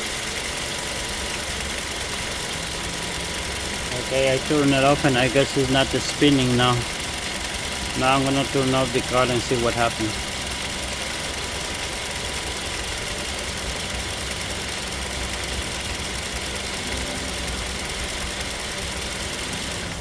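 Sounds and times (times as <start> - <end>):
truck engine idling: 0.0 - 20.0.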